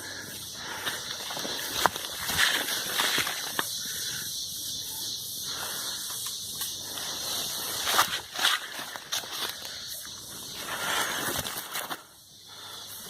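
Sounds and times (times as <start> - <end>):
rustling of leaves and brush: 0.0 - 13.0
steady high hiss: 0.0 - 13.0
footsteps in undergrowth: 0.5 - 3.8, 6.2 - 12.2.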